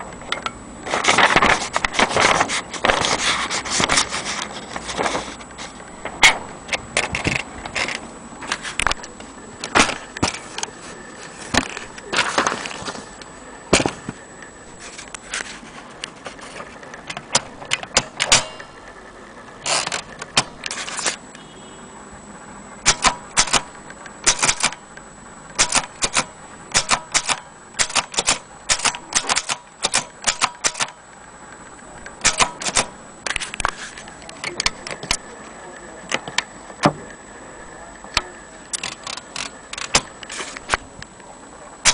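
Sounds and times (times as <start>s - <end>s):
typewriter key strikes: 22.8s - 23.6s, 24.2s - 24.8s, 25.6s - 31.0s, 32.2s - 32.9s.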